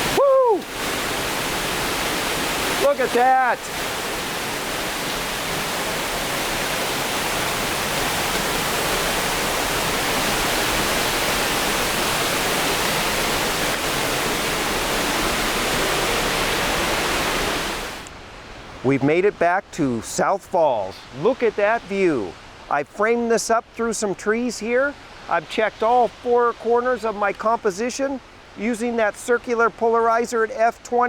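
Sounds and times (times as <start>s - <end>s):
waterfall pouring: 0.0s - 18.0s.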